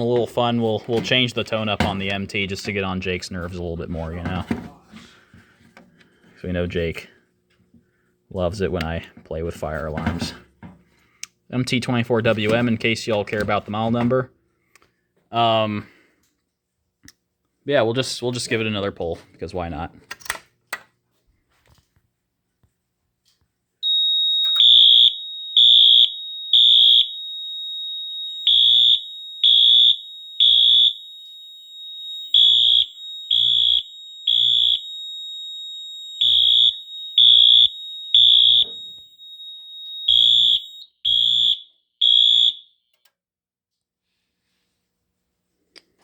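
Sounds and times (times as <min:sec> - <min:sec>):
faint steady alarm tone: 0:23.8 - 0:42.9
pulsing electronic fire alarm: 0:23.8 - 0:42.9.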